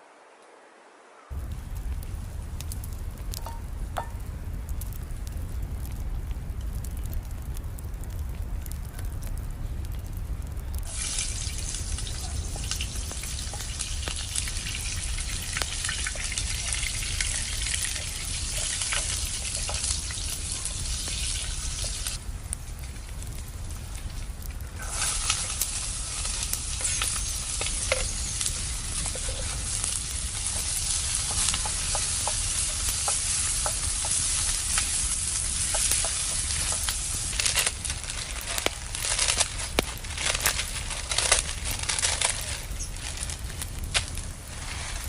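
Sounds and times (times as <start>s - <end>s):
campfire rumble and crackles: 1.3s - 45.0s
food sizzling in a pan: 3.4s - 4.2s, 10.8s - 22.2s, 22.8s - 45.0s.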